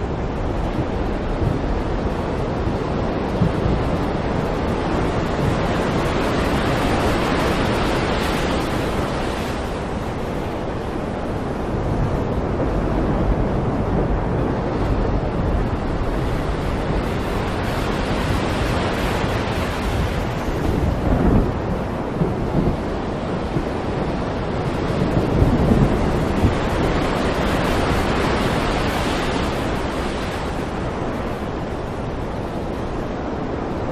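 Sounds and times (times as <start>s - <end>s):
waves rushing: 0.0s - 33.9s
wind: 0.0s - 33.9s
low thunder rolls: 11.1s - 32.8s.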